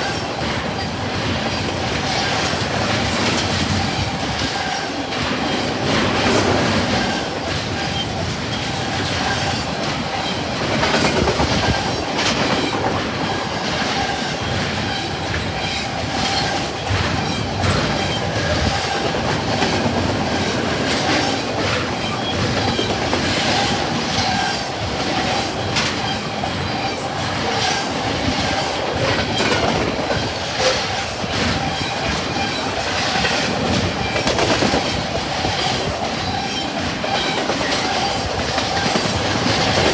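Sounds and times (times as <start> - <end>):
rumble of wheels on rail: 0.0 - 39.9
wheels clacking over rail joints: 0.0 - 39.9.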